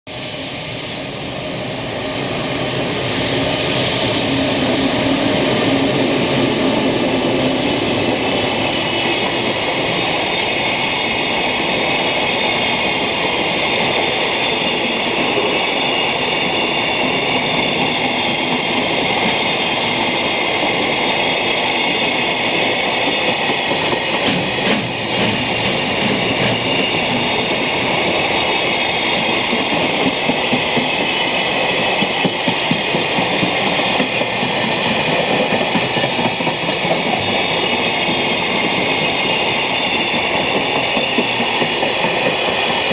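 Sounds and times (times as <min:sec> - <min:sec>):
train wheels rumbling on rail: 0:00.1 - 0:42.9
wheels clacking over rail joints: 0:23.3 - 0:28.2.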